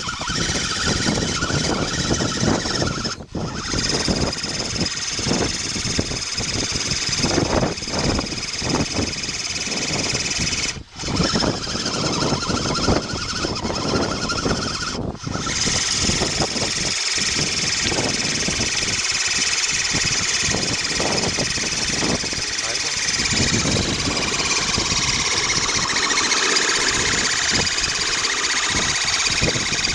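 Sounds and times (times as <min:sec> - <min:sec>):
electric motor and gearbox whine: 0:00.0 - 0:29.9.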